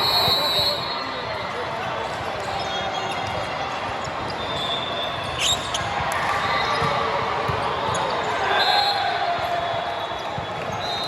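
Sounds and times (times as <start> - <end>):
murmur of players and spectators: 0.0 - 11.0.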